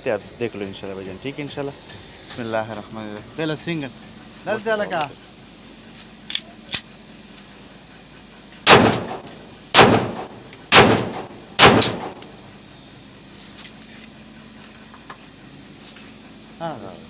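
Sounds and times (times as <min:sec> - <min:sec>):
pistol shots with echo: 0:08.7 - 0:12.3.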